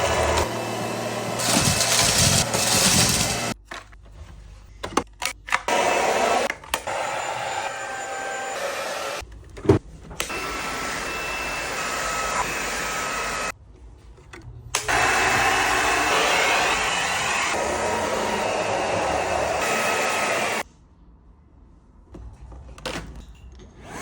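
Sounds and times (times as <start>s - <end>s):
vacuum cleaner whining: 0.0s - 3.6s, 5.7s - 9.2s, 10.2s - 13.5s, 14.9s - 20.6s.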